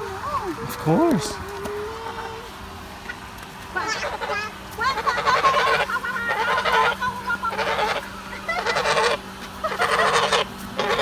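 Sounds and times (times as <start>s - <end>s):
geese honking: 3.8s - 11.0s.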